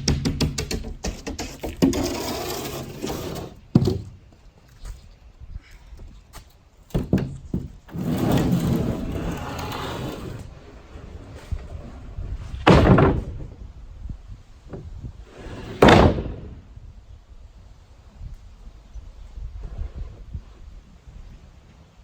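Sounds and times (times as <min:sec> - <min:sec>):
loud thuds: 0:12.6 - 0:13.6, 0:15.7 - 0:16.6.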